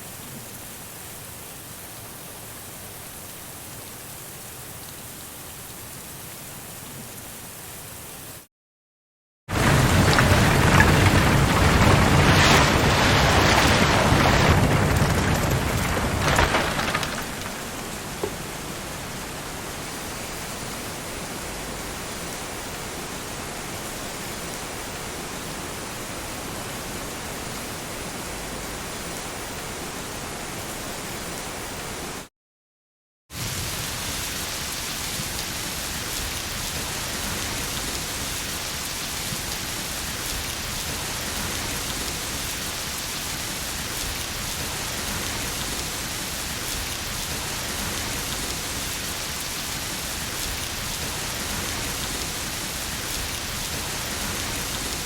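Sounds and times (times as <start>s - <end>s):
thunder rumbling: 9.5s - 20.0s, 43.4s - 55.0s
heavy rain hissing: 9.5s - 32.1s, 33.3s - 55.0s.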